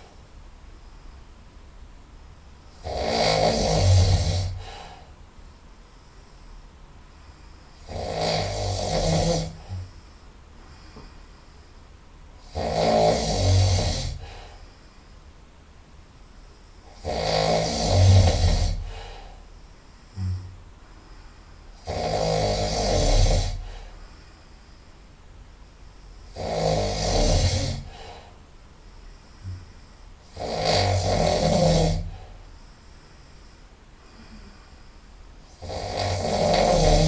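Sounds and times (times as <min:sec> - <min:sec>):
person snoring through the nose: 0:02.7 - 0:05.1, 0:07.7 - 0:11.6, 0:12.4 - 0:14.8, 0:16.8 - 0:24.4, 0:26.2 - 0:28.4, 0:29.1 - 0:37.0.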